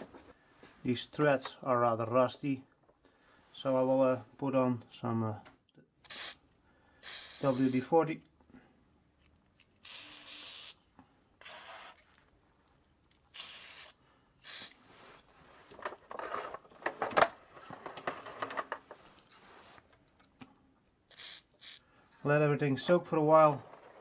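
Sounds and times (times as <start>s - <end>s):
aerosol spray bursts: 6.1s - 6.4s, 7.0s - 7.8s, 13.4s - 14.8s.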